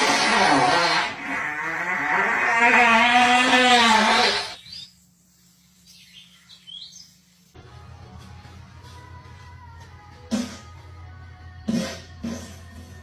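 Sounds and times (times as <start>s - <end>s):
fart noise: 0.0s - 4.6s.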